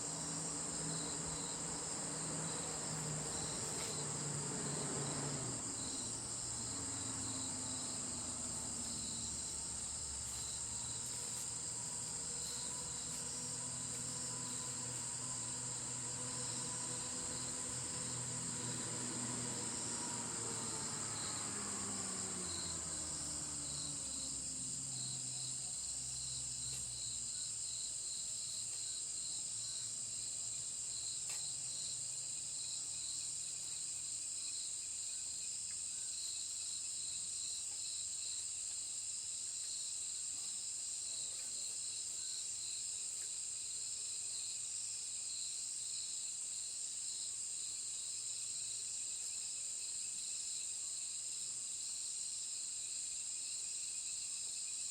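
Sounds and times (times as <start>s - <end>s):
high-pitched insect drone: 0.0s - 25.5s
insect chirping in a pulse: 0.0s - 40.2s.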